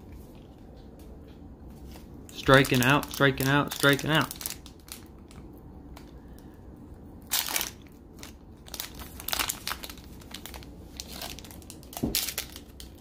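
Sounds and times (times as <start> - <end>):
foil wrapper crinkling: 1.8 - 5.4, 7.2 - 13.0.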